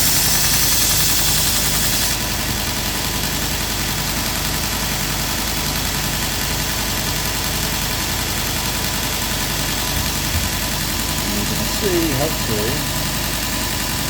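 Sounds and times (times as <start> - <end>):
grinder belt hissing: 0.0 - 2.5, 8.4 - 14.0.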